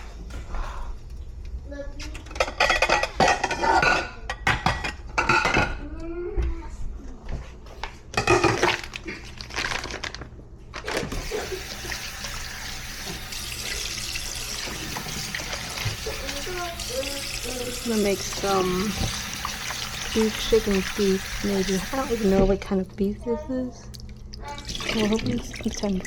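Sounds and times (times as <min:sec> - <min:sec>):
dishes and utensils clattering: 0:02.1 - 0:05.9, 0:08.1 - 0:09.1, 0:10.9 - 0:22.7, 0:24.5 - 0:26.0
tap running into sink: 0:11.1 - 0:22.6.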